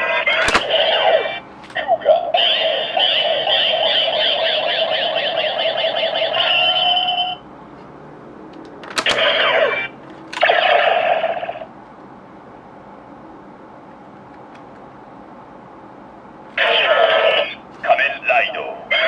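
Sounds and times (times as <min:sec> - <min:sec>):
sharp click: 0:00.4 - 0:00.8.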